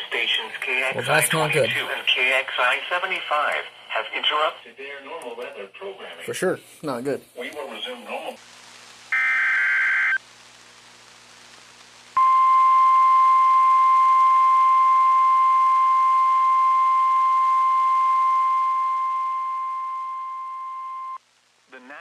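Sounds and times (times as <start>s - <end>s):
steady high alarm tone: 17.8s - 21.2s.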